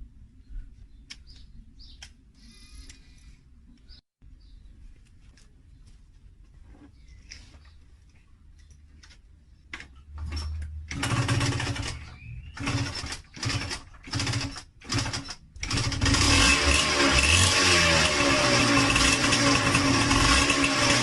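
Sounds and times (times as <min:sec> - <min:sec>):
two-stroke engine starting: 0:10.2 - 0:21.0.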